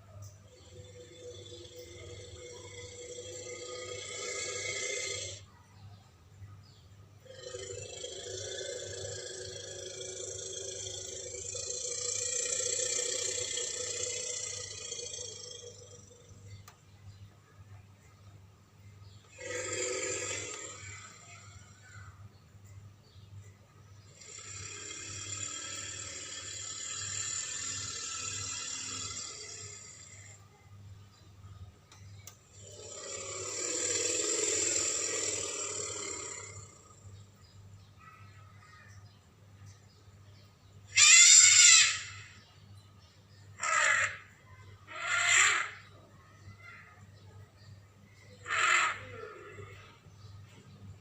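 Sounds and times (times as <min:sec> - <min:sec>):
faint low hum: 0:00.0 - 0:51.0
harsh elephant-like call: 0:00.2 - 0:05.5, 0:07.2 - 0:16.5, 0:19.2 - 0:22.2, 0:24.1 - 0:30.4, 0:32.5 - 0:37.1, 0:40.9 - 0:42.4, 0:43.6 - 0:46.0, 0:48.3 - 0:50.0
elephant rasping exhalation: 0:19.3 - 0:21.4.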